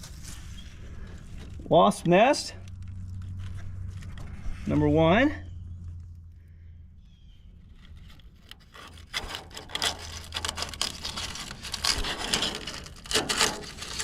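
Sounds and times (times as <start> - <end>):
hands scraping and rustling: 7.8 - 14.0.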